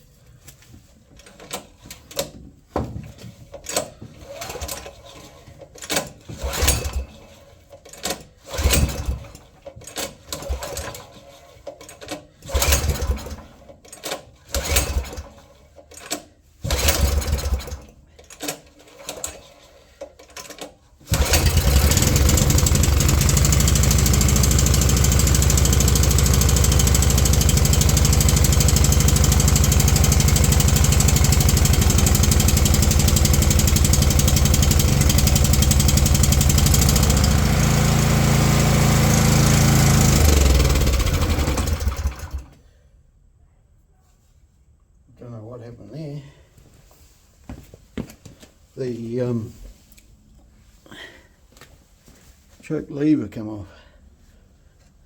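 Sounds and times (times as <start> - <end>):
recoil starter pulls: 3.4 - 42.6
small petrol engine running: 6.4 - 7.2, 8.4 - 9.4, 12.5 - 13.6, 14.5 - 15.4, 16.7 - 17.9, 21.1 - 42.6.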